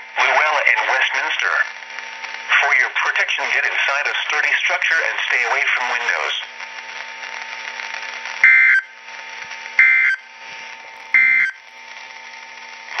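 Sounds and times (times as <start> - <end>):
low radio hiss: 0.0 - 13.0
harsh digital data bursts: 8.4 - 9.0, 9.8 - 13.0.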